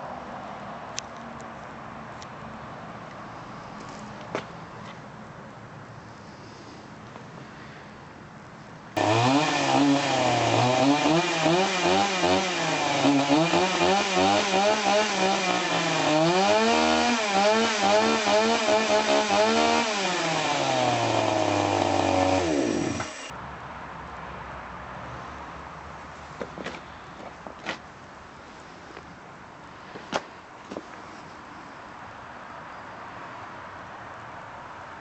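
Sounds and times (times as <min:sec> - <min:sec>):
chainsaw revving: 0:09.0 - 0:23.3.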